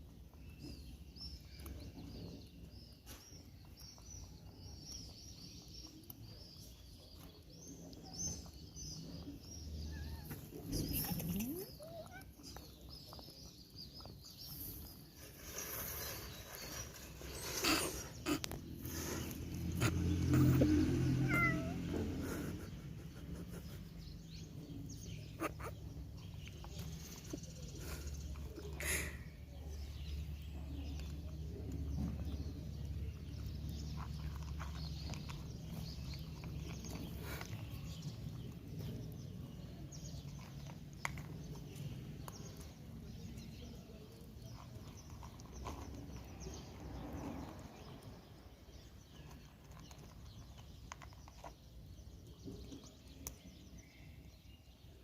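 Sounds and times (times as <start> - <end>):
cats meowing and yowling: 9.6 - 12.8, 20.3 - 22.2.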